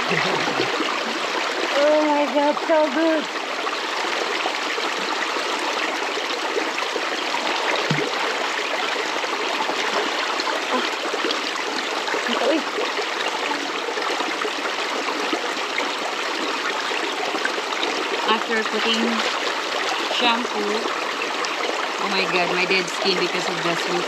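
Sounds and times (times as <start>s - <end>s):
river water rushing: 0.0s - 22.0s.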